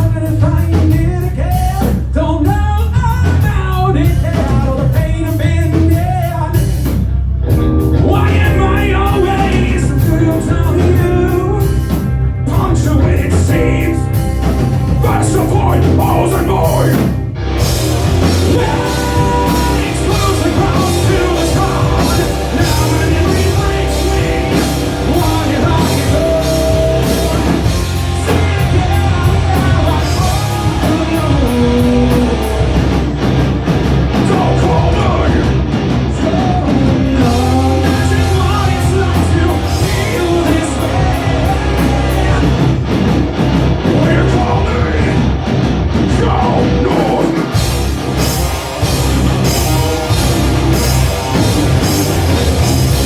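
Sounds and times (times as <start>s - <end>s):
bass guitar: 0.0s - 53.0s
distorted electric guitars: 0.0s - 53.0s
drums: 0.0s - 53.0s
person singing: 8.0s - 11.9s, 12.5s - 14.2s, 15.0s - 17.2s, 18.2s - 32.8s, 36.2s - 42.8s.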